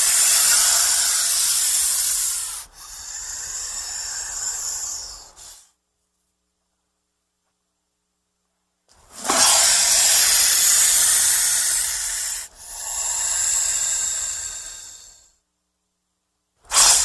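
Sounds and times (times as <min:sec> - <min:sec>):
snake hissing: 0:00.0 - 0:05.7, 0:09.1 - 0:15.3, 0:16.7 - 0:17.0.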